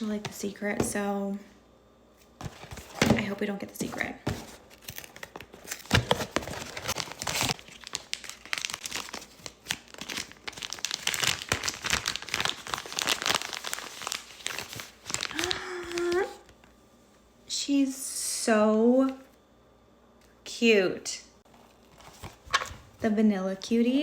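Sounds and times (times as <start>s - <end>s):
wrapper crinkling and tearing: 4.7s - 16.6s.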